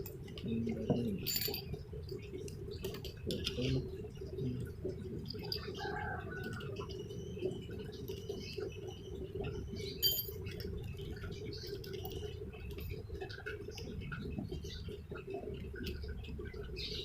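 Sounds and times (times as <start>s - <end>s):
small metal parts being handled: 1.2s - 1.8s, 10.0s - 10.6s.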